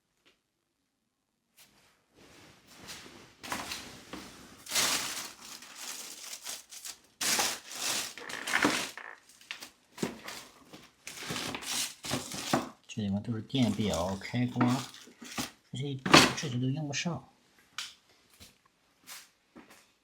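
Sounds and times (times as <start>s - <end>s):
things rustling and clattering: 1.6s - 12.8s, 13.6s - 16.5s.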